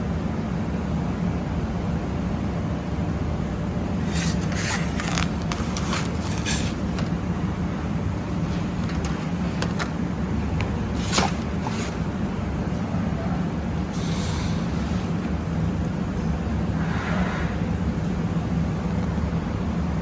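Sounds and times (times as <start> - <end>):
laser welding machine hum: 0.0 - 20.0
short hissing crackles: 13.8 - 15.6.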